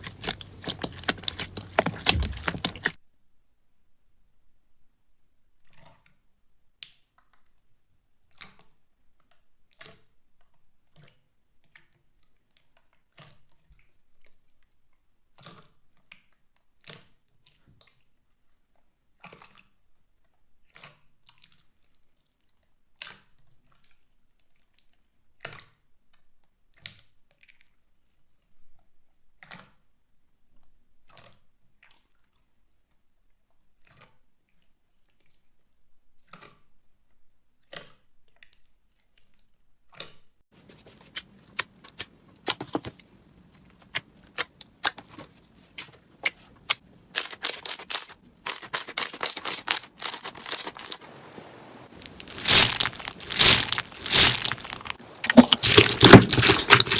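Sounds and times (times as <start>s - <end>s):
slime squishing and popping: 0.0s - 3.0s, 47.2s - 51.0s, 52.0s - 56.9s.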